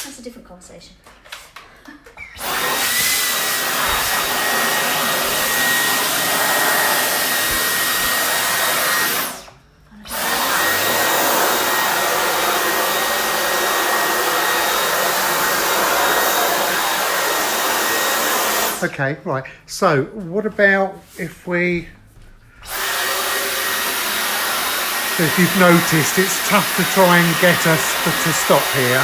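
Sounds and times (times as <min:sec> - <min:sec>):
vacuum cleaner motor whining: 0:02.3 - 0:18.9, 0:22.6 - 0:29.0.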